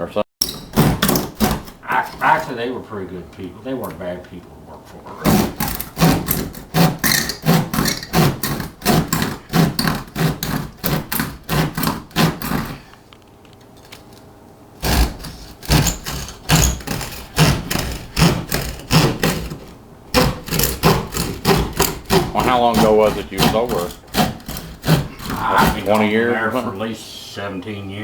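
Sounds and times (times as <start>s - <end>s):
knocking on drywall: 0.7s - 1.9s, 5.2s - 12.8s, 14.8s - 26.2s.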